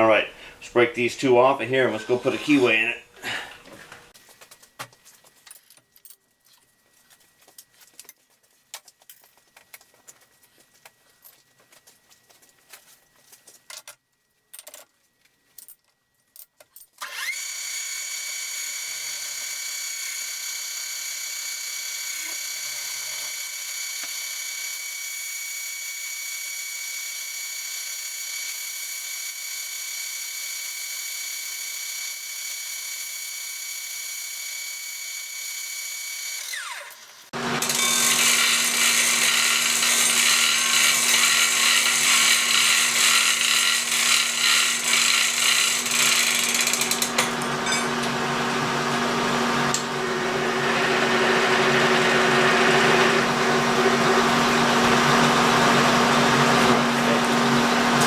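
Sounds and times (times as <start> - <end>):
power tool whining: 0.0 - 4.1, 17.0 - 24.2, 35.2 - 58.0.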